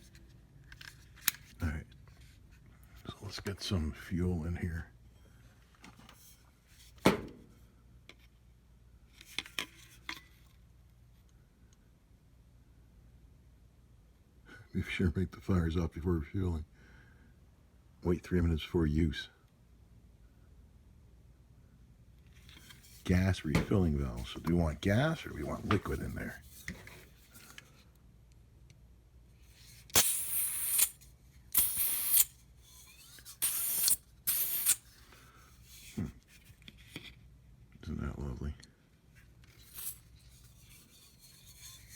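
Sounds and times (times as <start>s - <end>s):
gas hissing in spurts: 29.9s - 32.4s, 33.0s - 34.9s, 39.6s - 40.0s.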